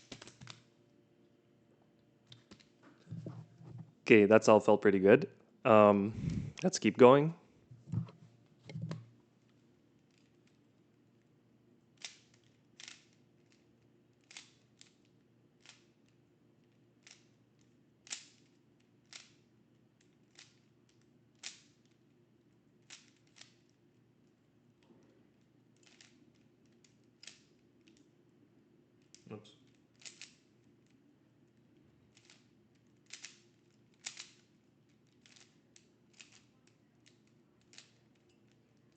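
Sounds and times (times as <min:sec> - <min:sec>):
puzzle cube clicking as turned: 0:00.0 - 0:00.6, 0:12.0 - 0:13.6, 0:14.2 - 0:16.1, 0:17.0 - 0:19.4, 0:20.0 - 0:22.0, 0:22.8 - 0:23.7, 0:25.8 - 0:28.0, 0:29.0 - 0:30.4, 0:32.1 - 0:38.3.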